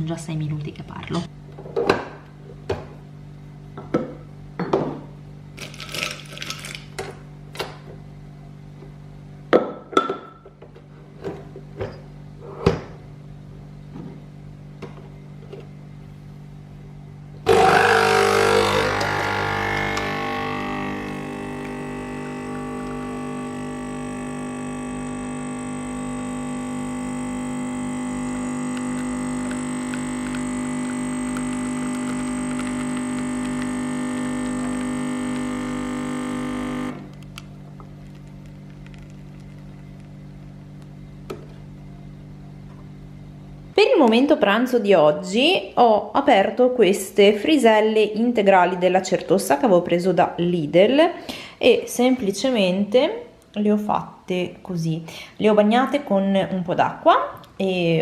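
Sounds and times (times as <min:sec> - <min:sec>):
coffee machine pump hum: 0:17.4 - 0:44.2.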